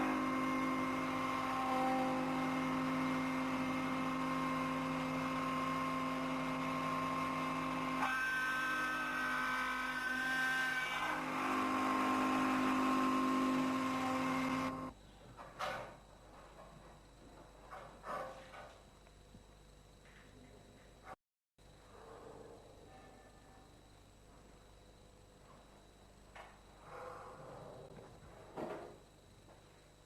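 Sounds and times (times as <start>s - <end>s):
workshop machinery whirring: 0.0s - 15.0s.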